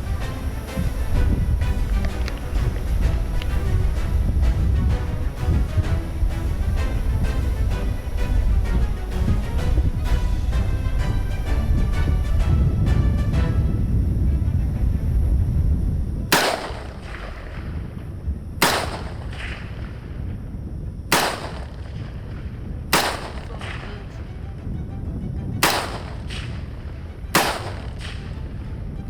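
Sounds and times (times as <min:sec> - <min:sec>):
background music: 0:00.0 - 0:17.2, 0:22.9 - 0:29.0
rifle shots with echo: 0:16.3 - 0:17.7, 0:18.6 - 0:19.9, 0:21.1 - 0:22.1, 0:22.9 - 0:23.9, 0:25.6 - 0:26.4, 0:27.3 - 0:28.2.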